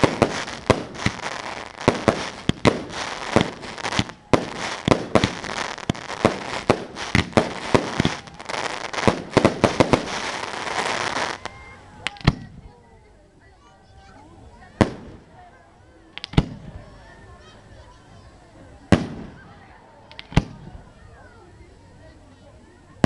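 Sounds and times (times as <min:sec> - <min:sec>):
firework crackling: 0:00.0 - 0:12.5, 0:14.7 - 0:15.3, 0:18.9 - 0:20.8.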